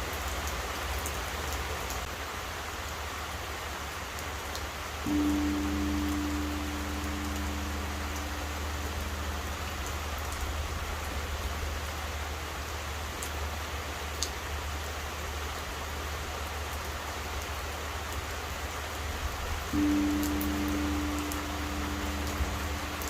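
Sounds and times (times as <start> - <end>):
steady rain falling: 0.0 - 23.0
temple bell hum: 5.1 - 11.0, 19.8 - 23.0.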